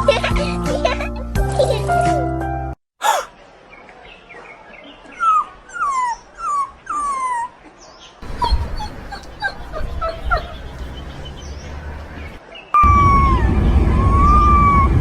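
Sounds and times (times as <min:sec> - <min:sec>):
puppy yipping: 0:05.2 - 0:07.5, 0:08.2 - 0:10.8
puppy whimpering: 0:05.7 - 0:07.5, 0:08.2 - 0:10.6.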